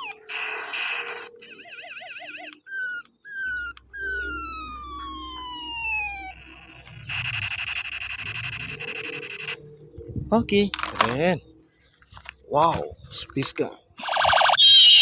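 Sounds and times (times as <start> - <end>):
toy laser pew tones: 0.0 - 9.6, 14.0 - 15.0
buzzing rapid fire rattle: 7.1 - 9.7.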